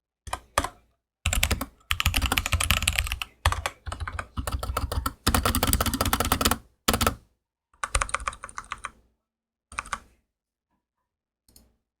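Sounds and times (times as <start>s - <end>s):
mechanical keyboard typing: 0.3s - 7.2s, 7.8s - 8.9s, 9.8s - 10.0s.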